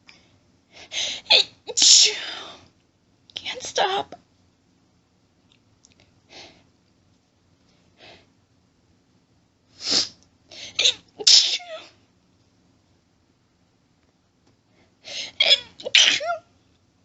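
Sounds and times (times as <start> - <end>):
person sneezing: 15.2 - 16.4.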